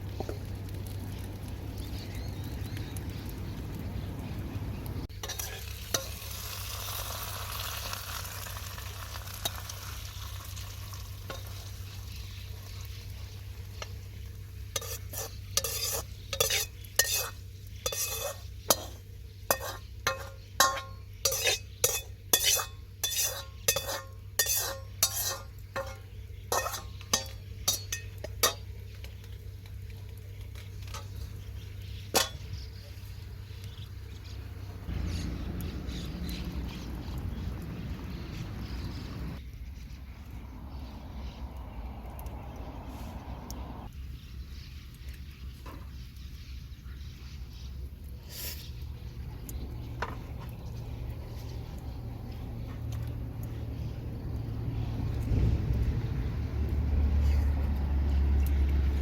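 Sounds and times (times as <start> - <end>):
spatula scraping and knocking wok: 5.1 - 9.8, 11.2 - 29.3, 30.5 - 32.9
stir-fry sizzling in a wok: 5.1 - 29.3.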